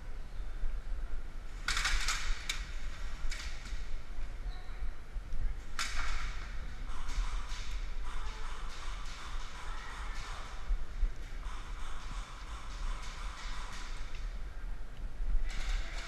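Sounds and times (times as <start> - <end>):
low wind rumble: 0.0 - 16.0
airsoft gun bursts: 6.9 - 10.7, 11.4 - 14.3.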